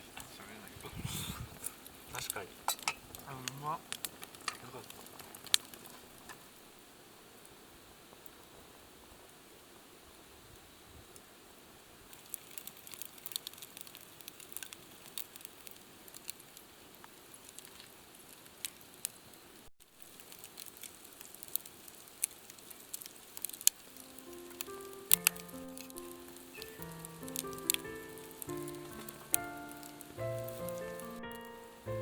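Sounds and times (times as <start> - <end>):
campfire crackling: 0.0 - 32.0
music: 23.9 - 32.0.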